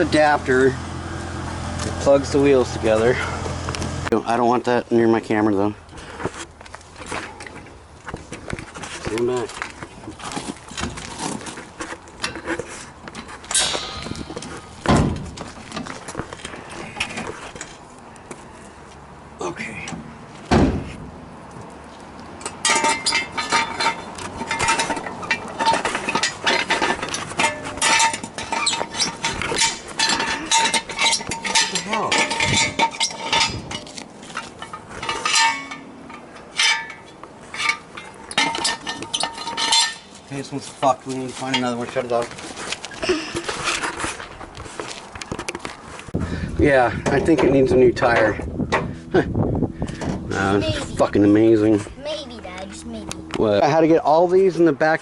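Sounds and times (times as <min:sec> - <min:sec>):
metal clinks and knocks: 0:07.0 - 0:17.9, 0:22.4 - 0:45.7
metal clanking: 0:10.4 - 0:17.8, 0:22.4 - 0:44.2
heavy thud: 0:13.6 - 0:15.5, 0:20.5 - 0:21.1.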